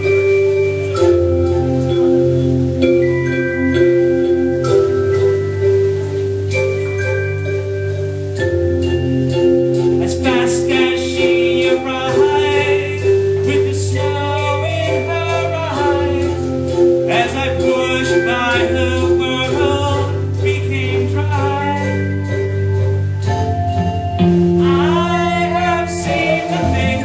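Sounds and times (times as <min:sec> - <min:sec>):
held chords: 0:00.0 - 0:27.0
steady bass line: 0:00.0 - 0:27.0
person singing: 0:10.0 - 0:16.5, 0:17.1 - 0:22.4, 0:24.5 - 0:27.0.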